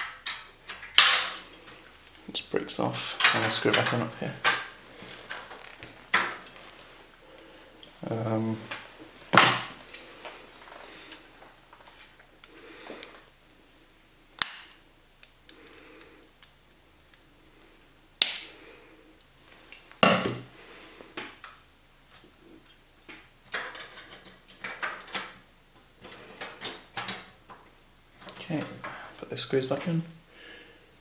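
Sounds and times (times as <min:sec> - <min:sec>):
clicks and knocks of computer parts: 0:00.0 - 0:01.4, 0:03.2 - 0:06.4, 0:23.1 - 0:25.4, 0:26.0 - 0:27.6
loud plastic snaps: 0:00.0 - 0:01.5, 0:14.4 - 0:15.6, 0:18.2 - 0:18.6.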